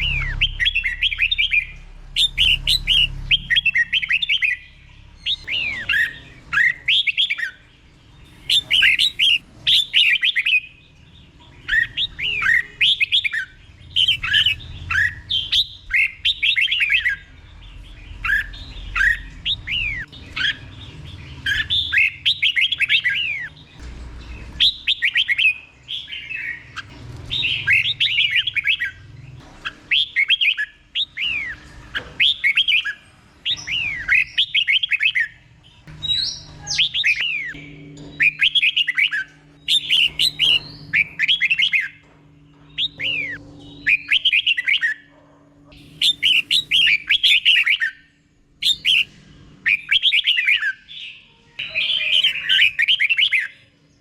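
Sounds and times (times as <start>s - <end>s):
bird singing whistled notes: 0.0s - 11.0s, 11.6s - 20.6s, 36.0s - 42.0s, 42.7s - 45.0s, 45.8s - 53.6s.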